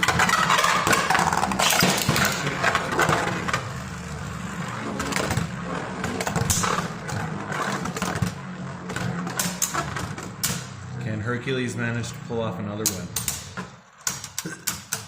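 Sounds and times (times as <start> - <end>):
spinning tops whirring: 0.0 - 11.0.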